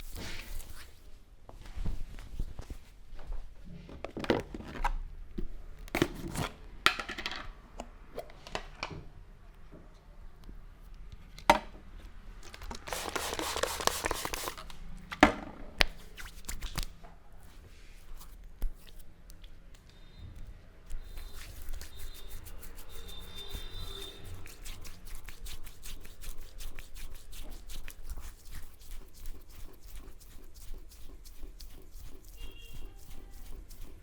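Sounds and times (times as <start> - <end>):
hands rubbing hair and scalp: 0.0 - 3.0, 12.7 - 14.8, 15.8 - 19.2, 20.9 - 34.0.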